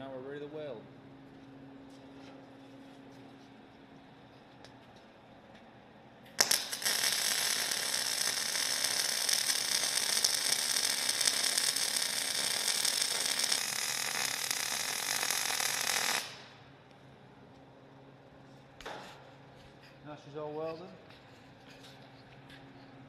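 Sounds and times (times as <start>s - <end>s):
welder arc crackling: 6.4s - 16.7s.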